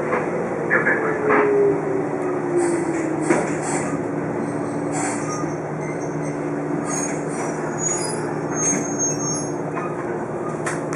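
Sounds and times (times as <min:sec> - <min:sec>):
electric train low hum: 0:00.0 - 0:10.9
wheels squealing: 0:03.6 - 0:10.6.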